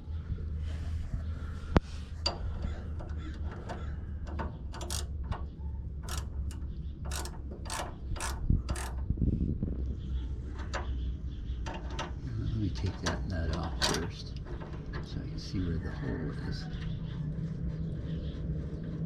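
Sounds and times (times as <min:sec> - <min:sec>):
ratchet wrench clicking: 0:02.2 - 0:09.1
sharp metallic click: 0:04.3 - 0:09.1.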